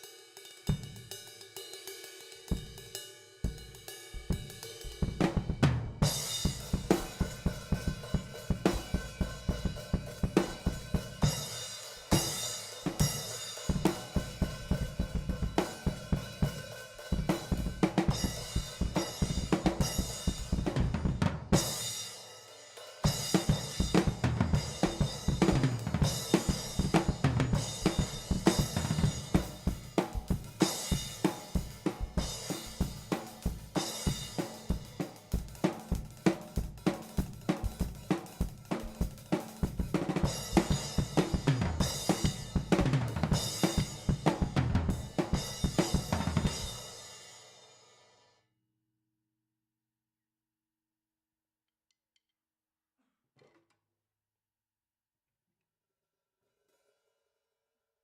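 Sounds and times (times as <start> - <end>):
drum kit playing: 2.5 - 22.0, 23.0 - 47.2.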